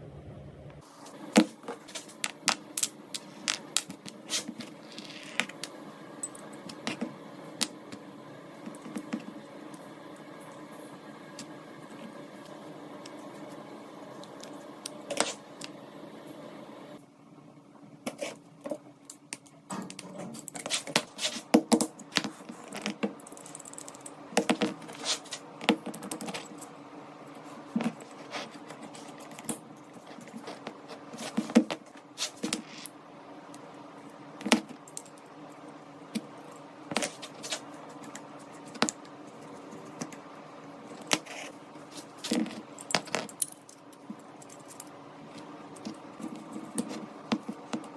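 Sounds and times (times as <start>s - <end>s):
faint steady hum: 0.0s - 47.9s.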